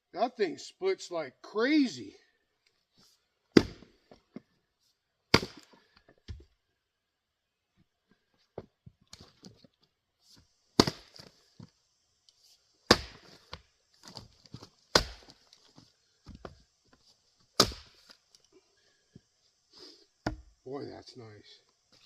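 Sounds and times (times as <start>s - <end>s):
axe chopping firewood: 3.5s - 4.0s, 5.3s - 6.5s, 10.8s - 11.4s, 12.9s - 15.6s, 17.6s - 18.2s, 20.2s - 20.5s.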